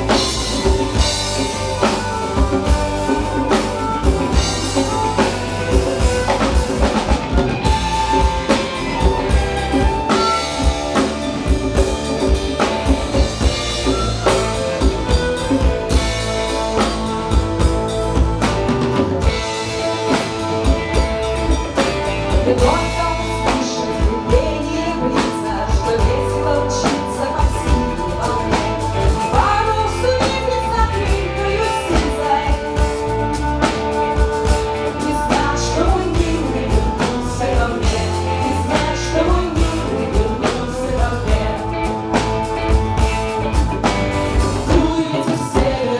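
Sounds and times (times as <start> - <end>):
drum kit beat: 0.0 - 45.9
folk-rock band playing: 0.0 - 45.9
person singing: 17.6 - 43.4, 44.6 - 45.9.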